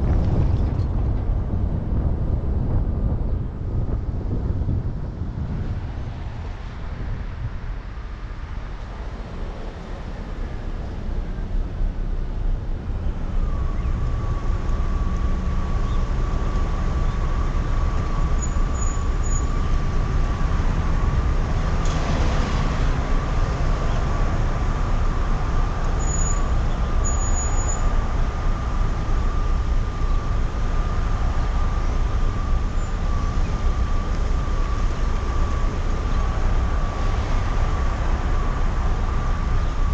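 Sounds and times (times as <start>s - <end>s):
engine and road rumble: 0.0s - 39.9s
high-pitched whine: 8.5s - 39.9s.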